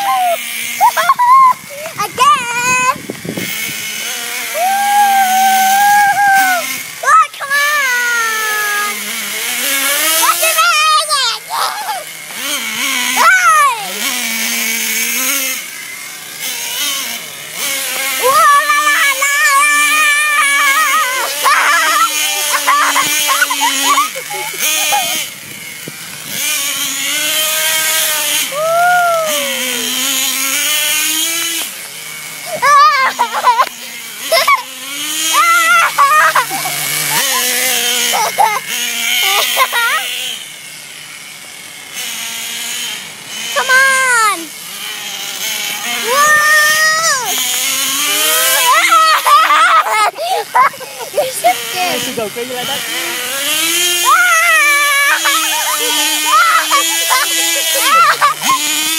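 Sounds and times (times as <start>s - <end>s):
child squealing: 0.0s - 3.0s, 4.4s - 9.0s, 10.0s - 14.1s, 18.0s - 25.3s, 28.3s - 30.1s, 32.4s - 40.2s, 43.6s - 44.5s, 45.8s - 52.1s, 52.8s - 58.9s
toy car electric motor whining: 0.0s - 58.9s.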